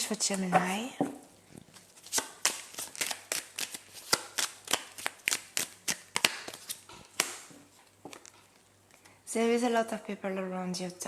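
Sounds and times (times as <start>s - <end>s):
cards being shuffled: 1.6s - 8.6s.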